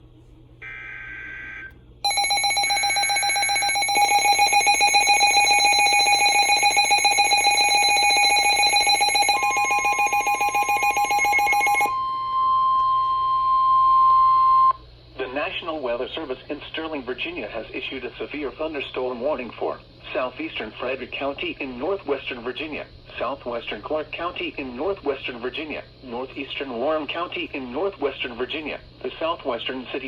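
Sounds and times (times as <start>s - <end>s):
fast-pulsing alarm beep: 0.6s - 14.8s
steady warning tone: 0.6s - 15.6s.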